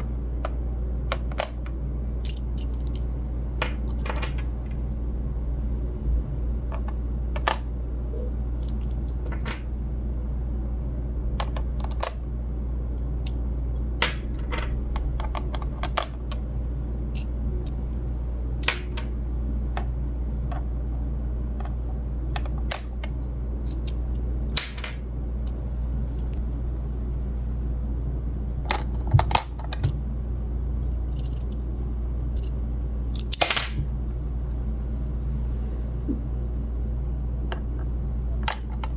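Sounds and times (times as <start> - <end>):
steady low hum: 0.0 - 38.9
plastic toy pieces clicking: 2.2 - 3.0.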